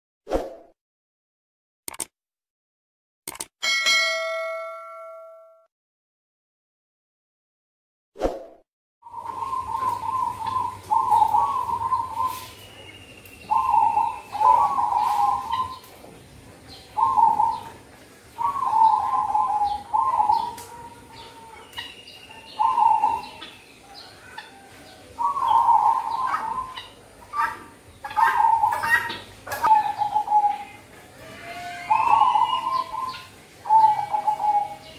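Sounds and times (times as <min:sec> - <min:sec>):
dove cooing: 0:09.1 - 0:12.5, 0:13.5 - 0:15.8, 0:17.0 - 0:17.7, 0:18.4 - 0:21.8, 0:22.4 - 0:30.8, 0:31.9 - 0:34.9.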